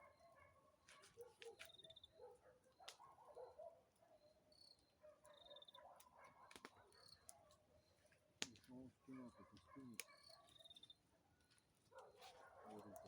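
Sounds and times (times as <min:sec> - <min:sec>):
campfire crackling and popping: 0:08.4 - 0:08.8.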